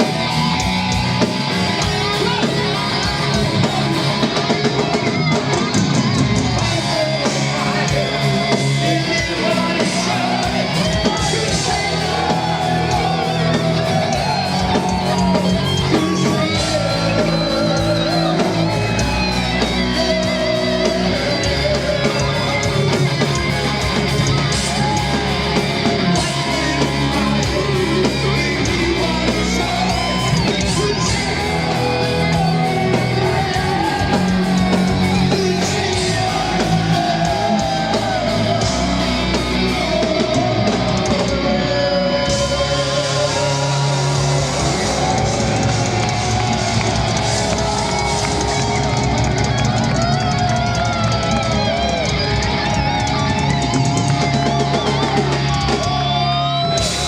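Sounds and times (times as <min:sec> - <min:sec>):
bass guitar: 0:00.0 - 0:57.0
distorted electric guitars: 0:00.0 - 0:57.0
drums: 0:00.0 - 0:57.0
heavy metal band playing: 0:00.0 - 0:57.0.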